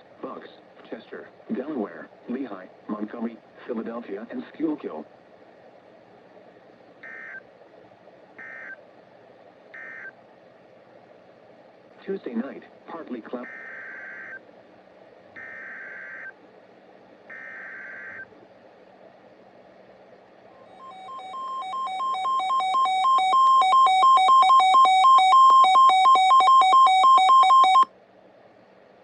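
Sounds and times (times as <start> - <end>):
two-pitch alarm beeps: 13.5 - 14.4, 15.4 - 16.3, 20.7 - 27.9
screechy digital warble bursts: 20.7 - 27.7.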